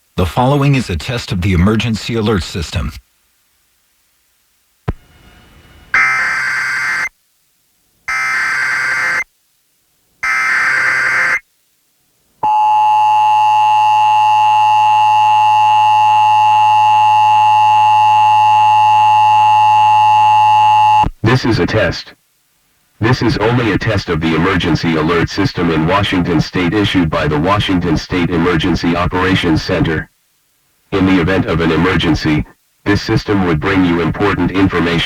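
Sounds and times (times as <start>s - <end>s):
buzzing data bursts: 5.9s - 7.1s, 10.2s - 11.4s.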